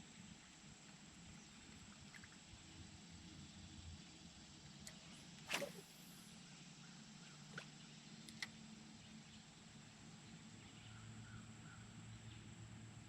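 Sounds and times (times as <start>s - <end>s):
low steady background hum: 0.0s - 13.0s.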